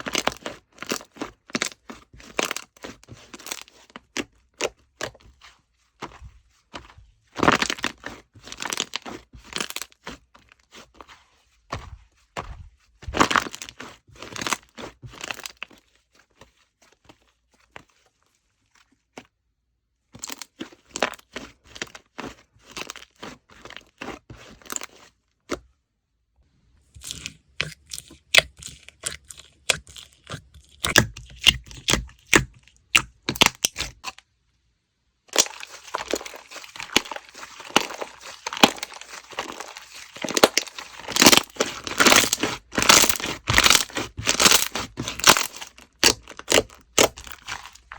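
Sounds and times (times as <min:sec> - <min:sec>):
slime crackling and popping: 0:26.9 - 0:34.2, 0:35.3 - 0:47.9.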